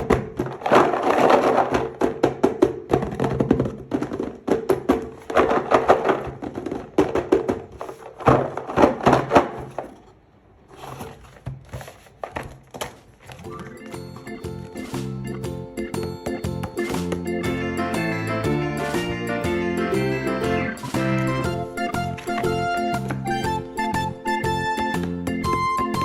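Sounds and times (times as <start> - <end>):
toy packaging taps and crinkles: 0.0 - 10.1, 11.0 - 15.0, 16.0 - 17.4, 21.5 - 26.0.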